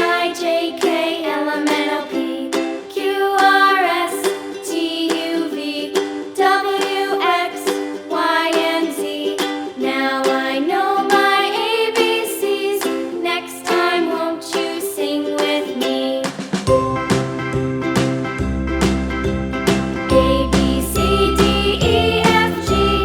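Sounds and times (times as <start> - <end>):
bright melody over steady beat: 16.7 - 23.0.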